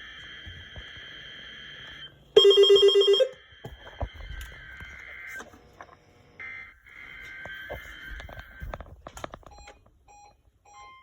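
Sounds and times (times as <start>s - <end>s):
pulsing ringing alarm: 0.0s - 5.4s.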